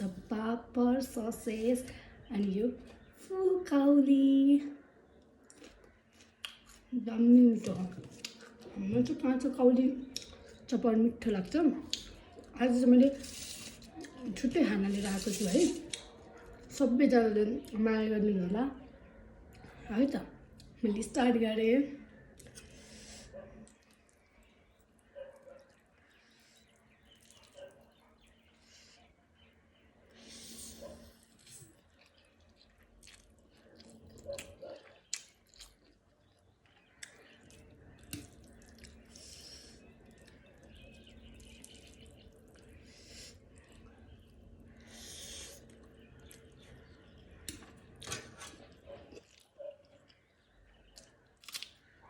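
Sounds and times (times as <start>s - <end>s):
soft mouth clicks chewing: 5.2s - 6.9s, 7.6s - 8.8s, 10.0s - 10.7s, 11.8s - 14.3s, 14.9s - 16.7s, 20.5s - 20.8s, 22.3s - 28.6s, 30.4s - 51.9s
crunchy bites: 50.9s - 51.9s.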